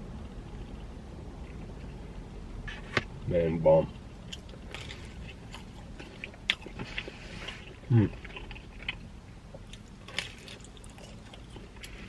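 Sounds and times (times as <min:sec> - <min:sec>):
chewing pizza: 0:03.9 - 0:12.0.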